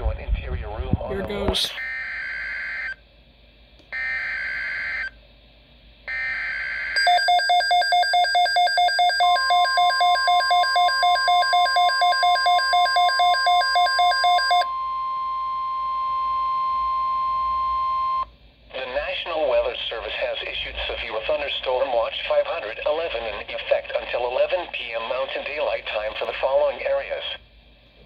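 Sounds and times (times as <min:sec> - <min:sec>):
steady warning alarm tone: 0:01.7 - 0:03.0, 0:03.9 - 0:05.2, 0:06.1 - 0:18.2.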